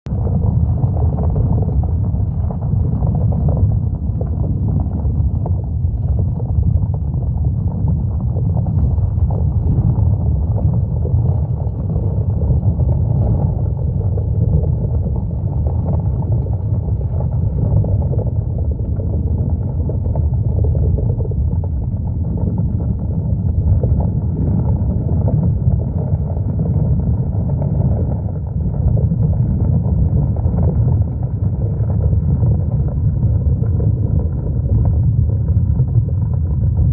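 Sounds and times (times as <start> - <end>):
loud low rumbling noise: 0.0 - 36.9.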